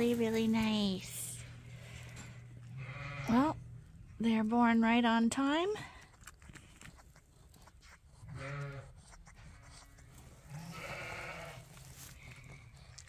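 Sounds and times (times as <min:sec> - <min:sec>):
sheep bleating: 0:02.7 - 0:03.6, 0:08.3 - 0:08.9, 0:10.5 - 0:11.7.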